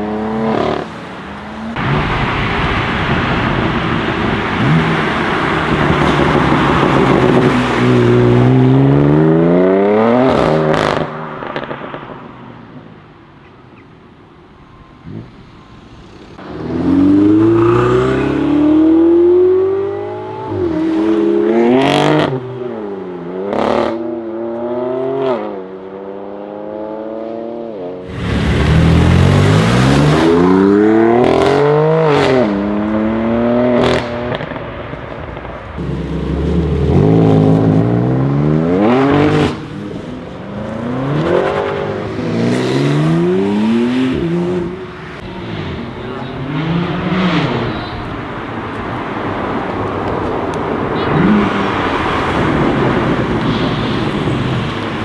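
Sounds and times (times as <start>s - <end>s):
car engine accelerating: 0.0s - 11.8s, 14.9s - 22.4s, 28.0s - 34.6s, 35.8s - 55.0s
exhaust crackles and pops: 45.2s - 55.0s.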